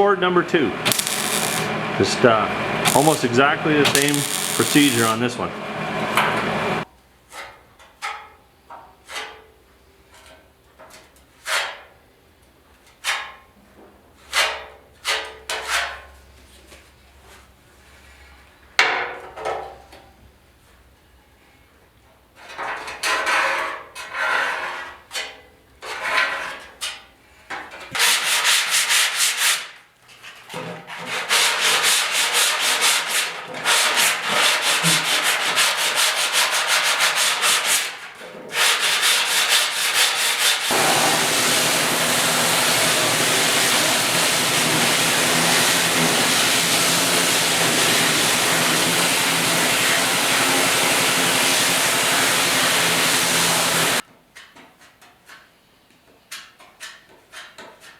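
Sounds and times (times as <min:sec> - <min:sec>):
sanding rasp: 0:00.9 - 0:01.8, 0:02.8 - 0:05.3, 0:31.0 - 0:54.0.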